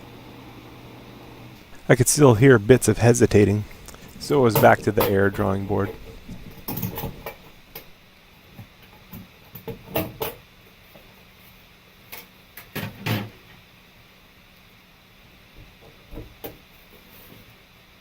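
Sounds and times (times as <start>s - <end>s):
exhaust fan humming: 0.0s - 17.6s
fan clicking and knocking: 2.6s - 8.0s.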